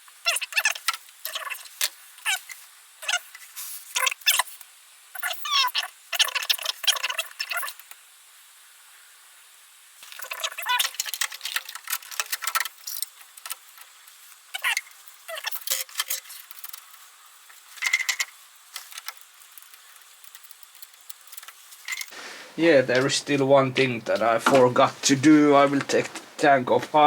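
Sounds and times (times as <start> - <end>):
tools and parts clicking and rattling: 10.8 - 13.6, 15.5 - 17.0, 17.7 - 22.1.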